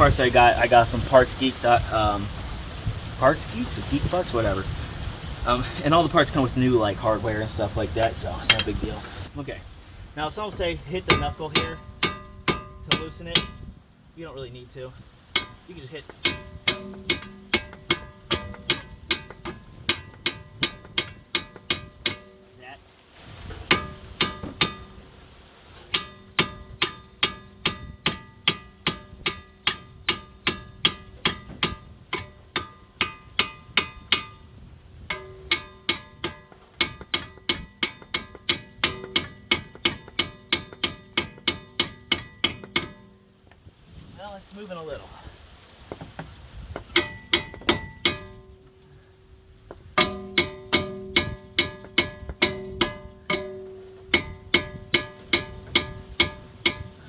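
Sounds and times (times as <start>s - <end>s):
hammer striking metal: 8.4s - 8.8s, 11.1s - 13.7s, 15.3s - 22.4s, 23.7s - 24.9s, 25.9s - 34.4s, 35.1s - 43.2s, 46.8s - 48.7s, 50.0s - 57.0s.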